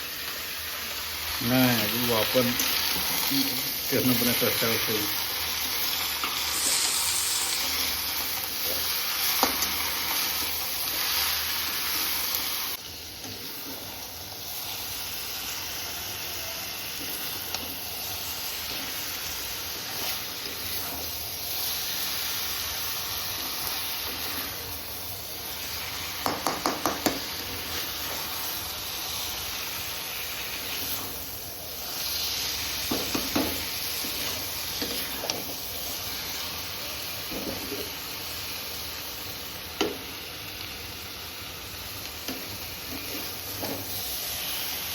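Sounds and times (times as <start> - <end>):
food sizzling in a pan: 0.0 - 44.9
utensil tapping a pan: 26.2 - 27.3, 32.9 - 33.6.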